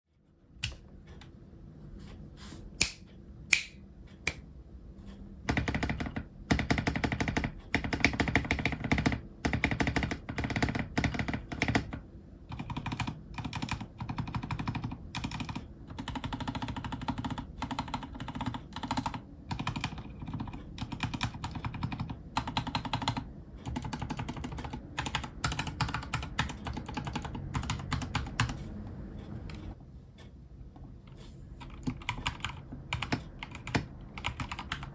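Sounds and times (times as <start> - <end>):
mechanical keyboard typing: 5.4 - 28.7, 31.6 - 34.9.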